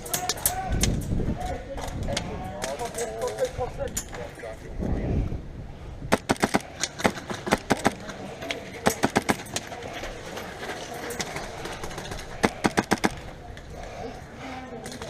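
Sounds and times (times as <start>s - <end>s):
airsoft gun firing bursts: 6.1s - 8.1s, 11.9s - 13.2s.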